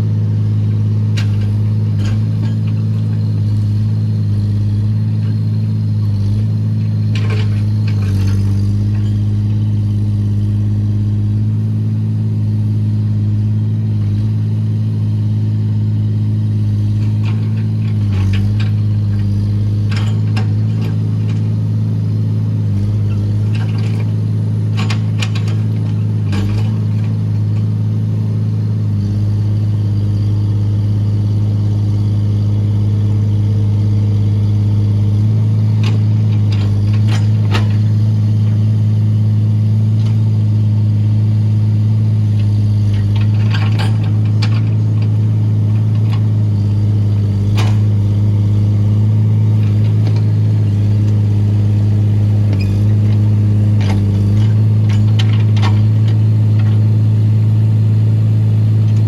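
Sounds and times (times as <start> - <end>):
excavator diesel engine running: 0.0 - 59.0
metallic clanks and knocks: 42.9 - 45.1, 47.5 - 47.9, 53.8 - 56.8.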